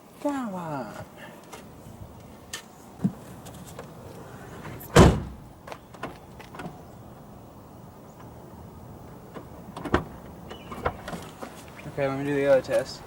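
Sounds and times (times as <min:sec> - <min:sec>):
car door loud thump: 0:04.9 - 0:05.4.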